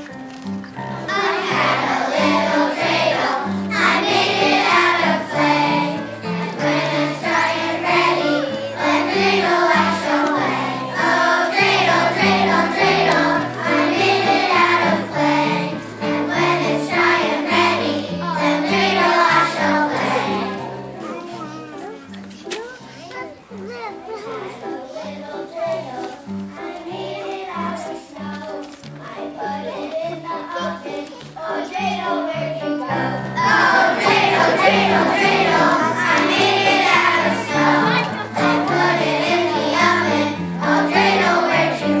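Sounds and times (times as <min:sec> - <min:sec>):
instrumental accompaniment: 0:00.0 - 0:42.0
children's choir singing: 0:00.8 - 0:21.2, 0:24.3 - 0:42.0.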